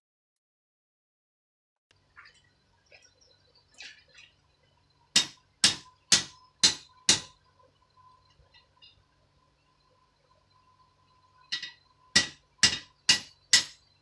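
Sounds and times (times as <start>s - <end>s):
hammer striking iron on anvil: 5.2s - 7.3s, 11.6s - 13.8s.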